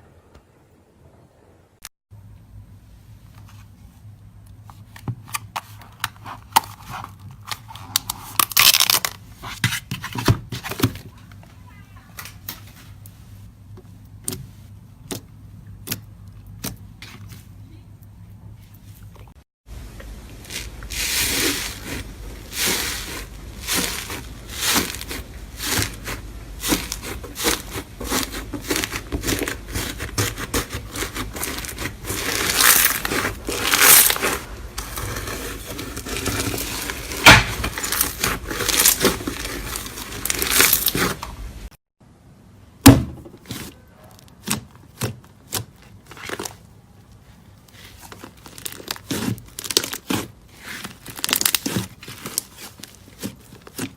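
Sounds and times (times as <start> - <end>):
slime squished by hand: 20.4 - 41.2, 47.6 - 53.9.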